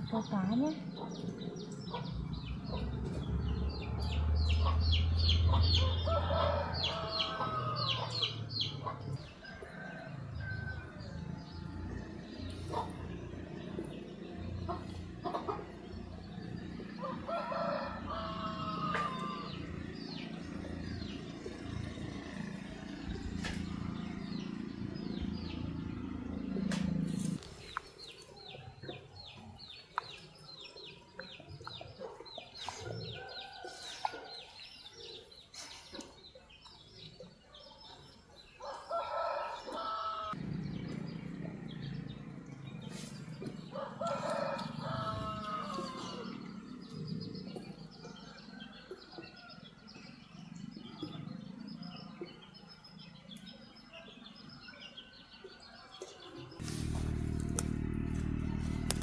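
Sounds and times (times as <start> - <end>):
small birds chirping: 0.0 - 59.0
rooster crowing: 4.6 - 12.0, 17.0 - 20.1, 38.6 - 40.4, 43.7 - 46.6.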